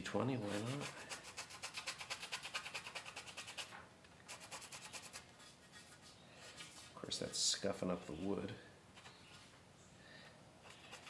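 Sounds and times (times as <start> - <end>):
sandpaper rasping on wood: 0.4 - 6.1, 10.7 - 11.0.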